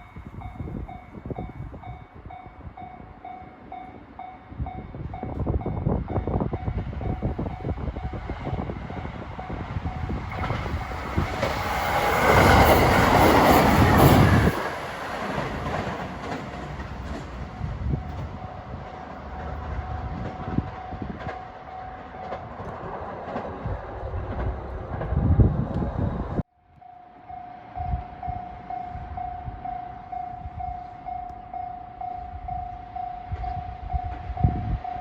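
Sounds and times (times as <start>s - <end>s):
train wheels clattering over rail joints: 10.3s - 18.4s
level crossing warning bell: 26.7s - 35.0s.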